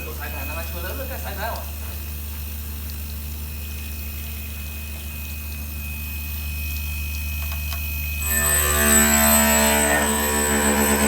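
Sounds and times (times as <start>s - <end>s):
low mechanical hum: 0.0s - 11.0s
thin high whine: 4.5s - 11.0s.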